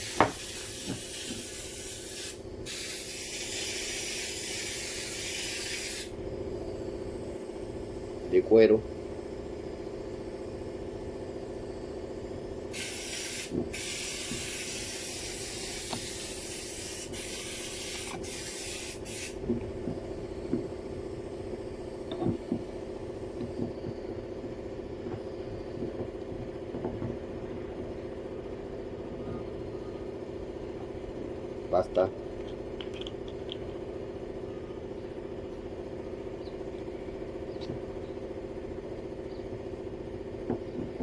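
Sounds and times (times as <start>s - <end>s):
pressurized spray hissing: 0.0s - 6.1s, 12.7s - 19.4s
steady machine hum: 0.0s - 41.0s.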